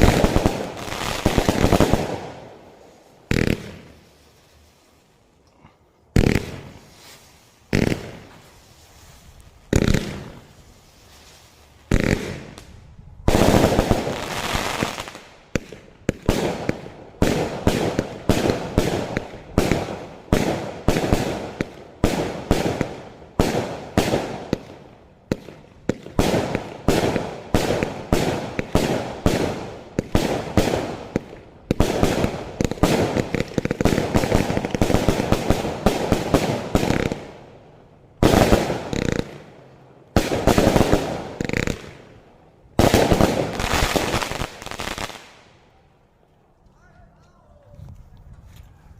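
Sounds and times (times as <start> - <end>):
firework cake firing: 0.0 - 2.6, 11.9 - 37.5
firework crackling volley: 0.0 - 48.9.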